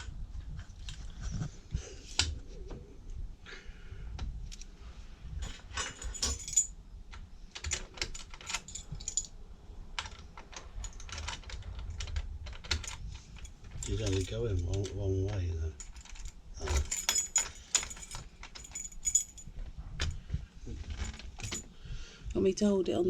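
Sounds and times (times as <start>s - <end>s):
metal hardware and tools clicking: 5.4s - 6.7s, 7.6s - 9.3s, 10.0s - 15.0s, 15.8s - 20.2s, 20.9s - 21.7s.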